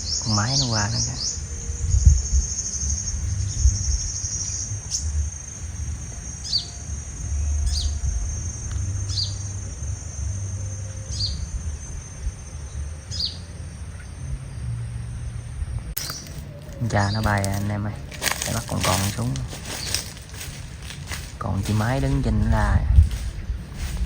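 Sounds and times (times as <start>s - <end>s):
bird high trill: 0.0s - 14.0s
sunbird high down-slurred calls: 0.0s - 14.5s.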